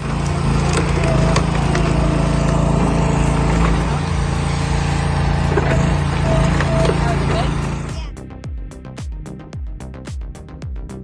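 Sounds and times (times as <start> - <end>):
log splitter engine running: 0.0 - 8.1.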